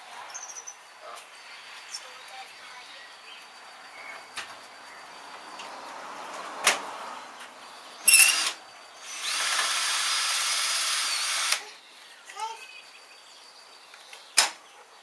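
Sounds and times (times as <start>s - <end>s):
cordless drill whirring: 8.1s - 11.6s
drill click: 8.1s - 11.6s.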